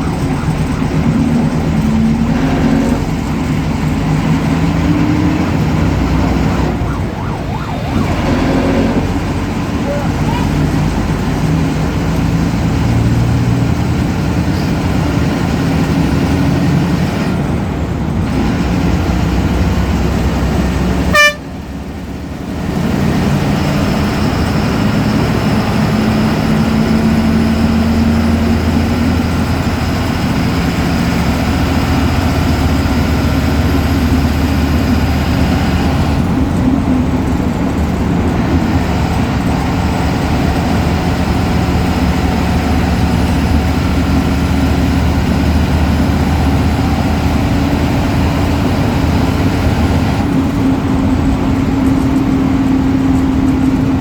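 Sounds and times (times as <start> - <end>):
diesel bus engine running: 0.0 - 54.0.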